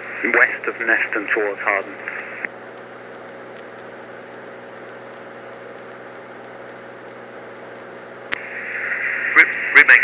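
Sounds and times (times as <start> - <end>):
headset hiss: 3.6 - 10.0.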